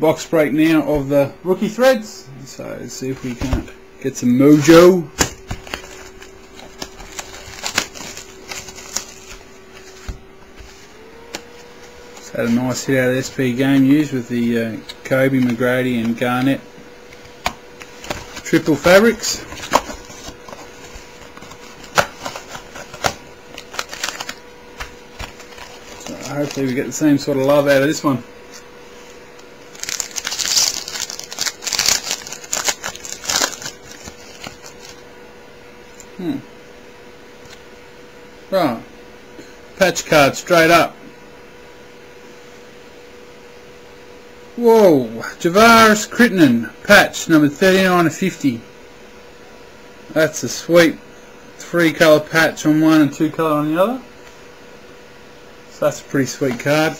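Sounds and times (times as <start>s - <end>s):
faint steady hum: 0.0s - 56.9s
foil wrapper crinkling: 5.2s - 10.7s, 17.8s - 27.6s, 29.7s - 35.0s.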